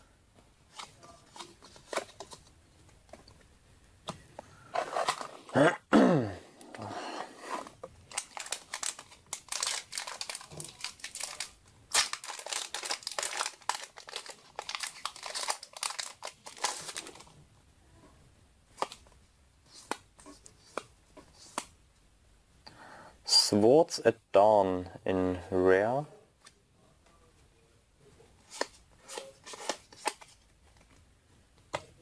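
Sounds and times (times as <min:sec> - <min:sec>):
foil wrapper tearing and crinkling: 0:08.1 - 0:17.3.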